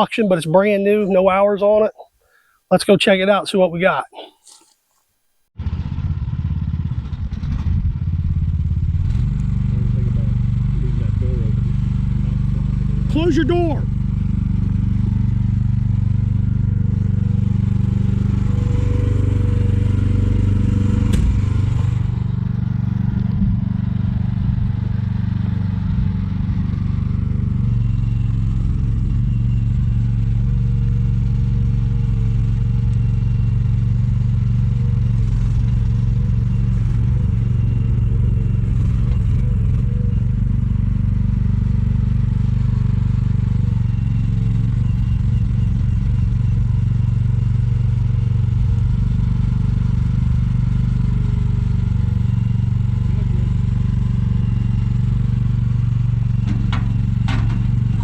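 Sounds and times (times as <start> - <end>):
engine running: 5.6 - 58.0
sharp knock: 20.6 - 22.2.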